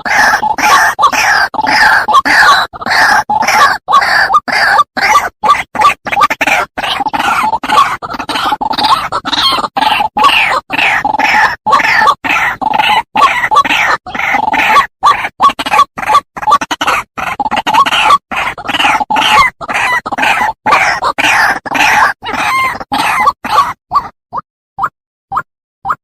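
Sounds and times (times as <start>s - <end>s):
waterhen calling: 0.0s - 24.2s.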